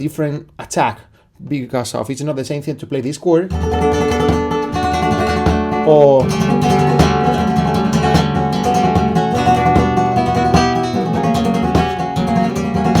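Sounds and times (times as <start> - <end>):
guitar strummed rapidly: 3.5 - 13.0.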